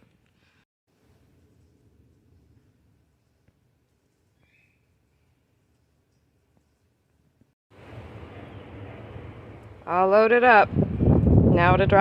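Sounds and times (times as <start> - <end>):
faint high chirp: 4.3 - 5.4.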